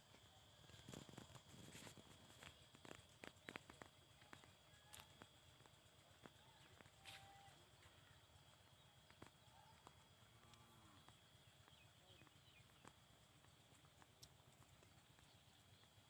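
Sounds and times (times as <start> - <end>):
faint clicks and knocks: 0.1 - 16.0
faint distant voice: 6.0 - 10.1.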